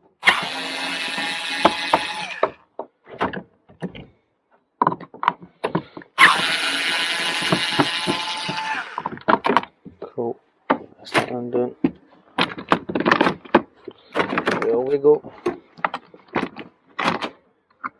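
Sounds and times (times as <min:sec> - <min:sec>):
handheld power tool running: 0:00.2 - 0:02.6, 0:06.2 - 0:09.2
handling clicks and knocks: 0:04.8 - 0:06.2, 0:09.0 - 0:17.9.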